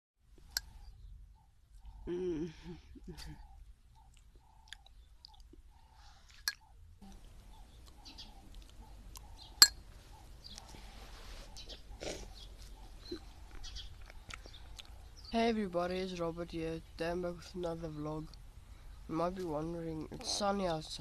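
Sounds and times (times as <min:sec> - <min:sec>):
person chewing food: 0:01.7 - 0:15.2.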